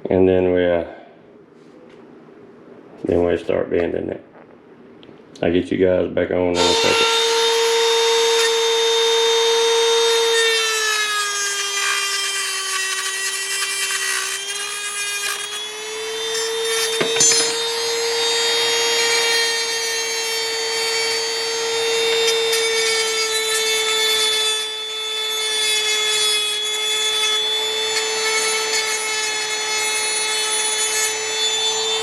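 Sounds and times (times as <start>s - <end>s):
rotary tool cutting metal: 6.6s - 32.0s.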